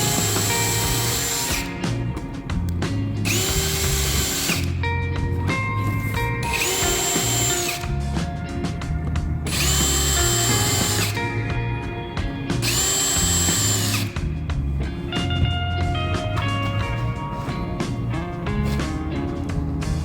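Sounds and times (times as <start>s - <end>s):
power drill whining: 0.0s - 2.3s, 3.2s - 4.8s, 5.8s - 8.3s, 9.4s - 11.4s, 12.3s - 14.3s
background music: 0.0s - 20.0s.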